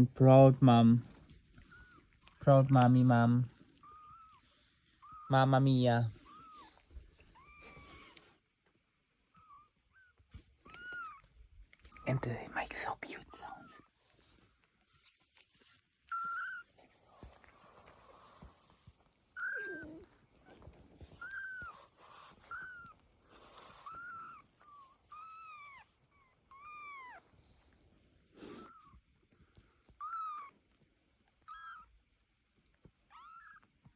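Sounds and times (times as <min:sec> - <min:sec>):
kittens mewing: 0:06.1 - 0:08.4, 0:09.4 - 0:12.2, 0:18.4 - 0:27.3.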